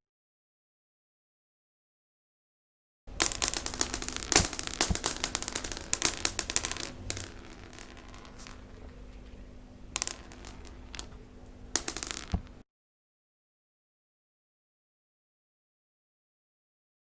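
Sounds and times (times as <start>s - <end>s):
beads scattering on hard floor: 3.1s - 12.6s.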